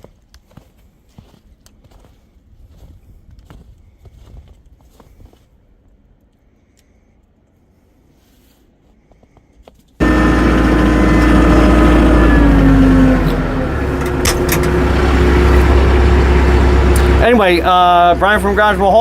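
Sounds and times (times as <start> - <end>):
tractor engine running: 10.0 - 19.0.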